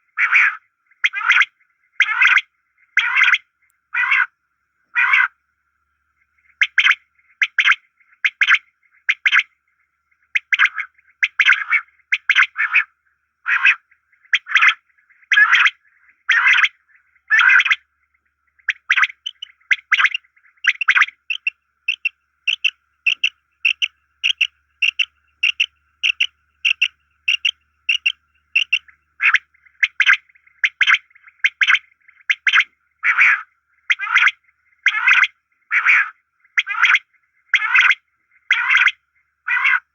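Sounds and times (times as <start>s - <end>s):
bird calling in high notes: 18.7s - 31.8s.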